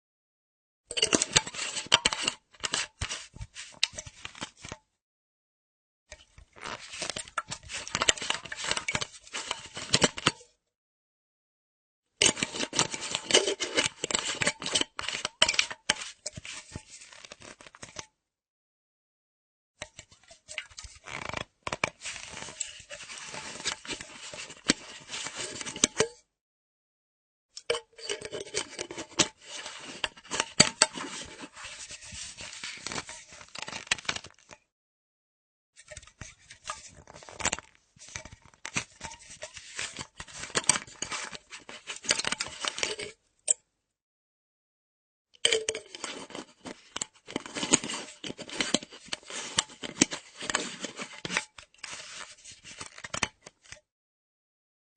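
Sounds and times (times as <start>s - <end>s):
metal screw cap scraping and clicking: 0.9s - 4.8s, 6.1s - 10.4s, 12.2s - 18.1s, 19.8s - 26.2s, 27.6s - 34.6s, 35.8s - 43.6s, 45.4s - 53.9s.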